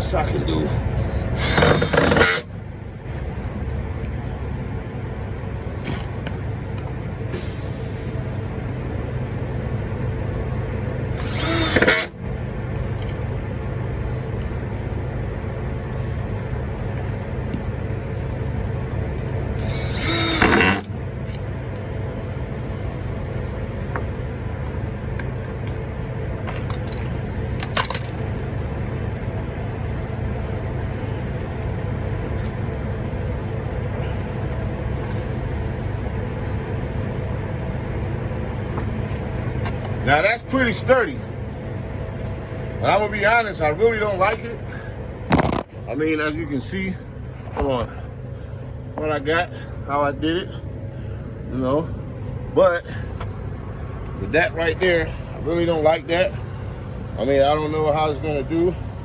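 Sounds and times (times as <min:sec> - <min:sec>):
steady low hum: 0:00.0 - 0:59.0
drill driving screws: 0:01.4 - 0:02.5, 0:11.2 - 0:12.1, 0:19.6 - 0:20.9.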